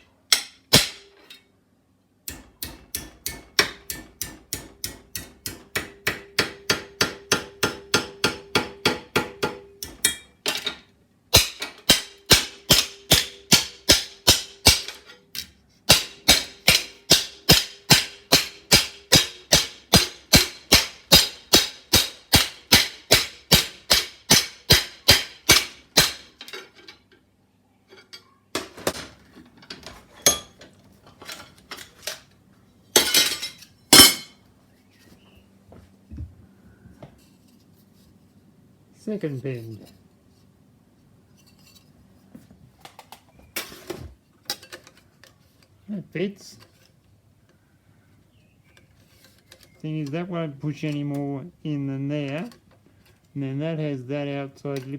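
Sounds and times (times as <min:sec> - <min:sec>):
hammer tapping sheet metal: 0:00.3 - 0:01.2, 0:02.3 - 0:10.4, 0:11.3 - 0:26.4.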